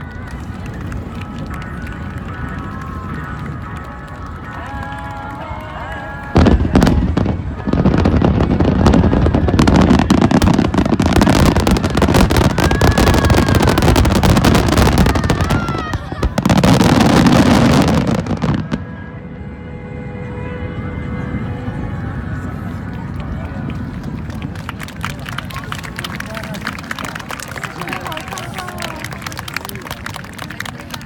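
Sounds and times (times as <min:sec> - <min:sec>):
fireworks crackling: 0:00.0 - 0:18.9
fireworks booming: 0:06.4 - 0:18.8.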